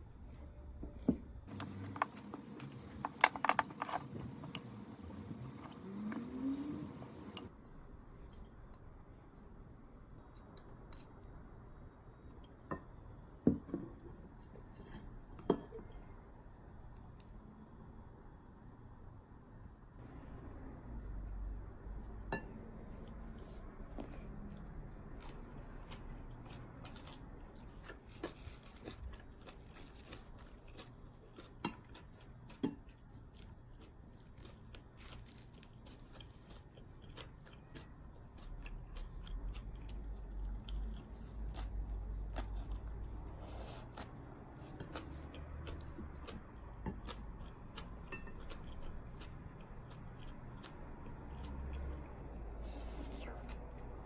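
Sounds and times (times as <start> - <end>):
person chewing food: 0.3 - 7.5, 22.9 - 54.0.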